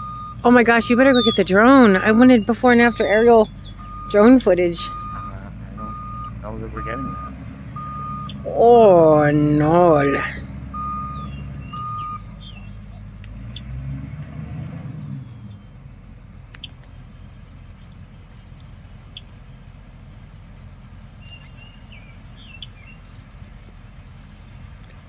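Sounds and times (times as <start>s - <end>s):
birds chirping: 0.0s - 13.9s, 14.8s - 25.0s
bulldozer engine rumbling: 0.0s - 25.0s.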